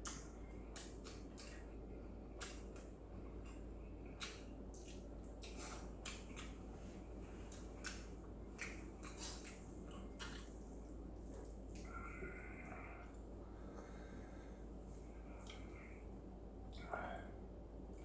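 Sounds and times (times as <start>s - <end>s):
low hum: 0.0s - 18.0s
person chewing and slurping: 2.4s - 6.6s, 7.4s - 10.6s.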